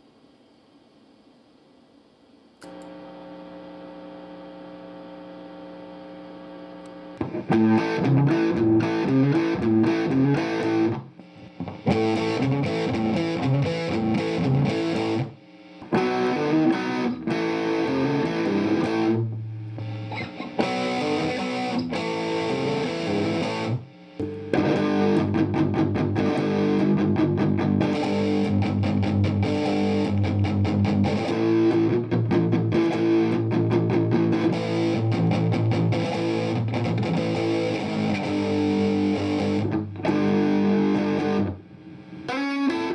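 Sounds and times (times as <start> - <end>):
overdriven electric guitar riffs: 6.8 - 42.9.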